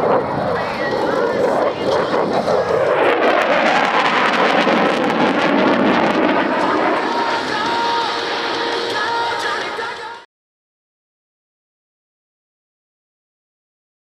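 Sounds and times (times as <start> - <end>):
jet engine roar: 0.0 - 10.3.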